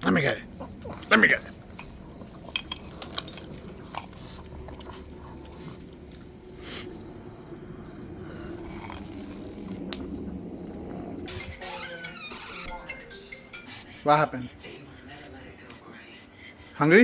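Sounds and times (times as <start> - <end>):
low rumble: 0.0 - 11.7
insect trill: 0.0 - 17.0.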